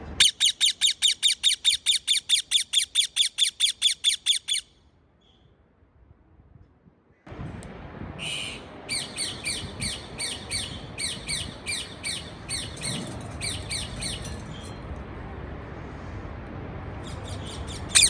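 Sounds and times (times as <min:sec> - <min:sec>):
parakeet squawking: 0:00.2 - 0:04.7.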